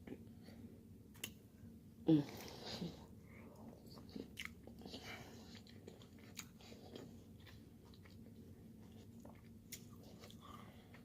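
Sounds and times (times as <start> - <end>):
close-up chewing: 3.3 - 11.0.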